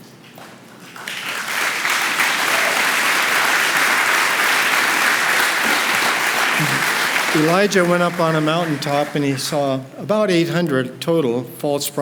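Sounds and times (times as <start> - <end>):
audience applauding: 0.8 - 9.8
man speaking: 6.6 - 12.0.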